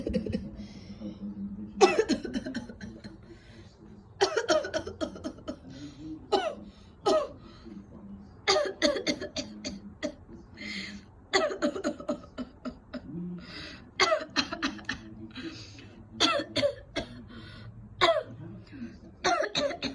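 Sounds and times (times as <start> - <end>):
person coughing: 1.8 - 3.2, 16.2 - 17.2, 19.2 - 19.9.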